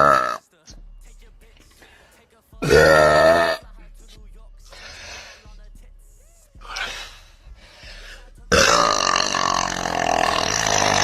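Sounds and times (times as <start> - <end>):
loud burp: 0.0 - 0.4, 2.6 - 3.6, 8.5 - 11.0
noisy breath: 1.3 - 2.5, 4.6 - 5.8, 6.5 - 8.5.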